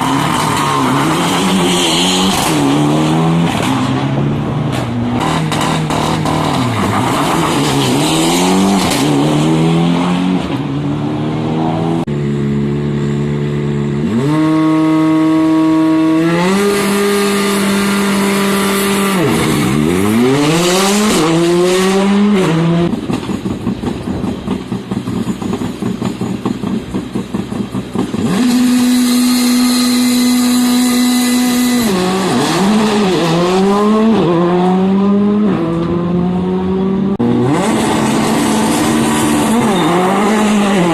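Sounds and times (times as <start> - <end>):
exhaust popping and crackling: 0.0 - 9.5, 22.4 - 33.4
rally car engines at full throttle: 0.0 - 40.9.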